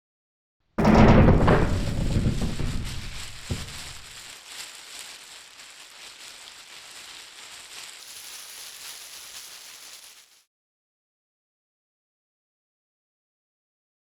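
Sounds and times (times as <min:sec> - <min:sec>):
low rumble: 0:00.8 - 0:04.1
crackling hiss with clicks: 0:02.6 - 0:10.5.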